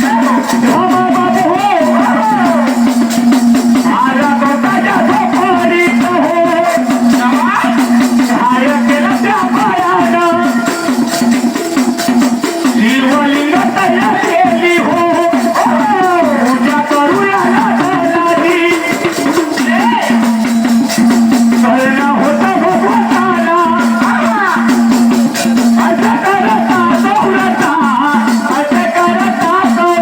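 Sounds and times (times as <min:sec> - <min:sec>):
devotional song: 0:00.0 - 0:30.0
rattling hand percussion: 0:00.0 - 0:30.0.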